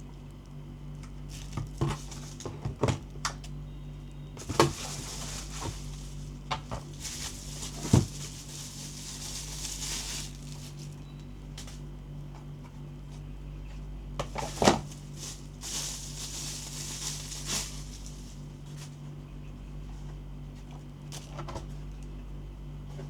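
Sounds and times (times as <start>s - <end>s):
steady low hum: 0.0s - 23.0s
packaging rustling: 1.3s - 2.6s, 4.4s - 11.0s, 14.3s - 18.9s.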